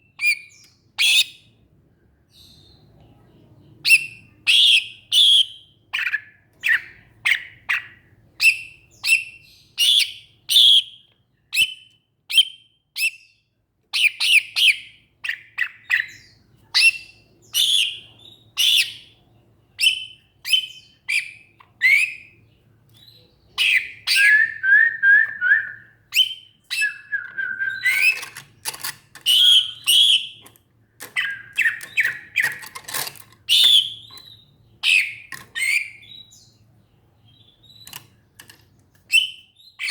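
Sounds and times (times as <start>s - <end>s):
bird singing whistled notes: 19.8s - 22.4s, 23.0s - 28.2s, 29.3s - 30.4s, 31.2s - 32.4s, 33.5s - 36.6s, 39.1s - 39.9s.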